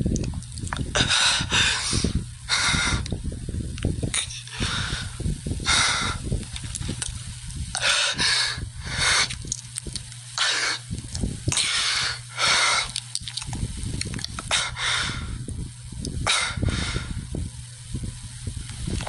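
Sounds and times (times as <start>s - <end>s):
steady low hum: 0.0s - 19.0s
person breathing hard: 0.9s - 3.2s, 4.1s - 7.1s, 7.7s - 9.6s, 10.4s - 10.9s, 11.5s - 13.0s, 14.4s - 15.5s, 16.1s - 17.4s.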